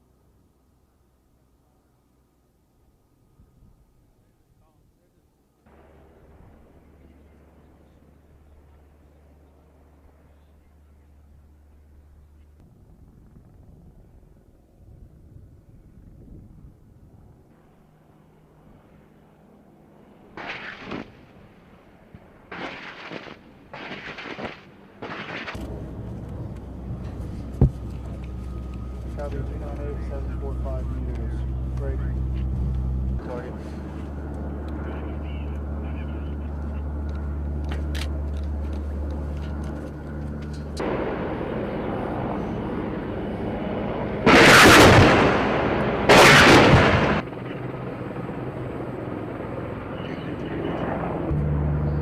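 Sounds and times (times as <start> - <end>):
low helicopter drone: 0.0 - 52.0
steady rumble: 5.7 - 52.0
loud weapon blasts: 20.4 - 21.2, 22.5 - 25.6, 44.2 - 47.2.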